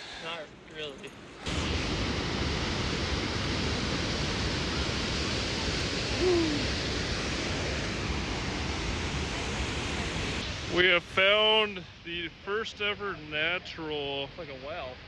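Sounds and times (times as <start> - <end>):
rushing river water: 1.4 - 10.9.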